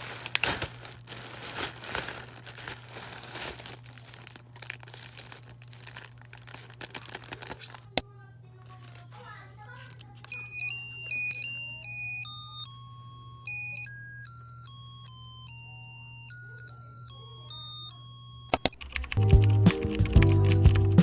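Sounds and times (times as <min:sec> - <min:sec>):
high-pitched electronic melody: 0:10.3 - 0:18.6
music track with a beat: 0:19.2 - 0:21.0.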